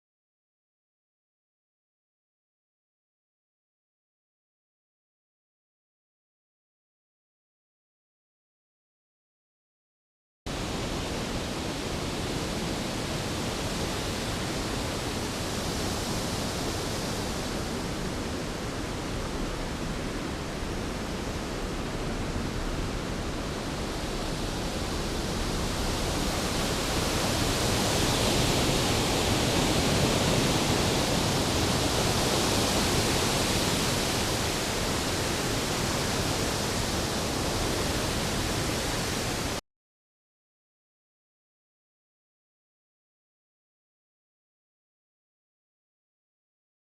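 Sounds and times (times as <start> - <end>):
rain and wind rushing: 10.5 - 39.6.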